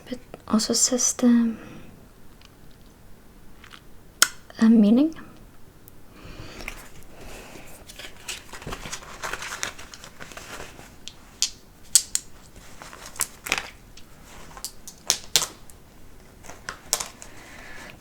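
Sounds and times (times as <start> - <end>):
packaging rustling and crinkling: 6.6 - 18.0.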